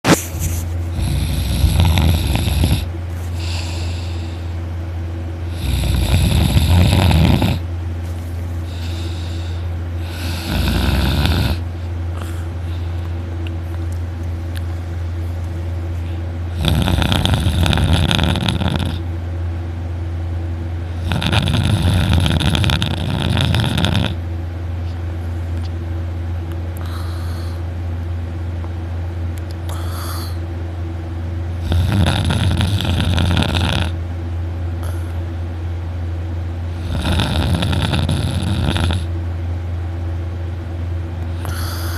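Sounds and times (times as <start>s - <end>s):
steady low hum: 0.0s - 41.9s
man snoring loudly: 0.9s - 4.4s, 5.4s - 7.7s, 8.7s - 11.6s, 16.5s - 19.0s, 20.9s - 24.2s, 31.6s - 34.0s, 36.7s - 39.1s, 41.4s - 41.9s.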